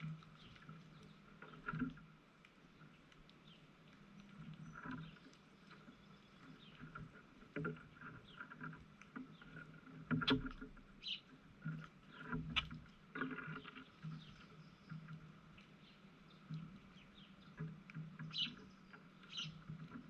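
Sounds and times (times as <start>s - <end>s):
birds chirping and calling: 11.0s - 11.3s, 18.2s - 19.7s.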